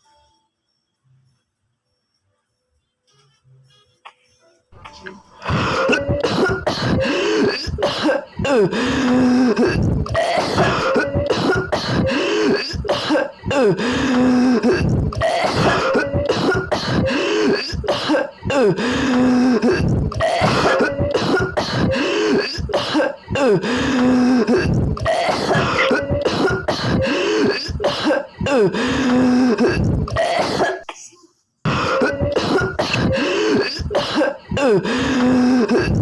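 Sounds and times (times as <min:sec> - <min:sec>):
goofy coughing: 0:04.8 - 0:36.0
wavering voiced tones: 0:25.6 - 0:26.2.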